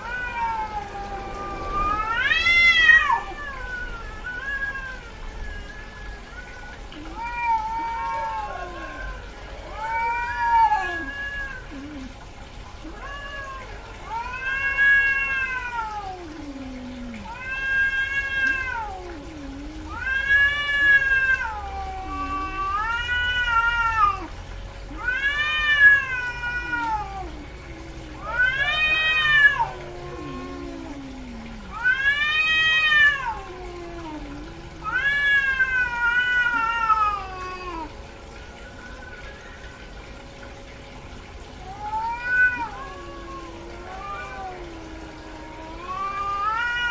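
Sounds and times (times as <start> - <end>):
cat caterwauling: 0.0 - 38.1, 41.6 - 46.9.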